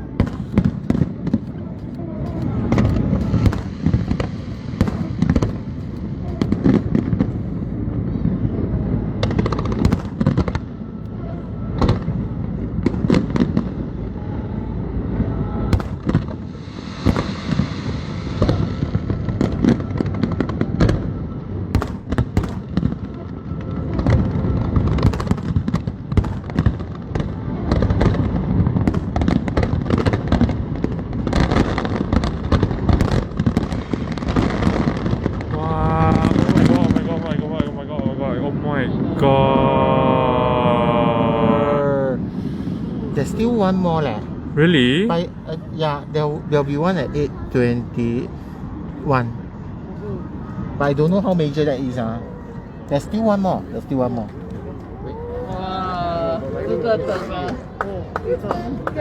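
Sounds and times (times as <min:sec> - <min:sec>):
fireworks bangs and crackles: 0:00.0 - 0:59.0
fireworks hissing: 0:00.2 - 0:07.4, 0:15.8 - 0:19.6.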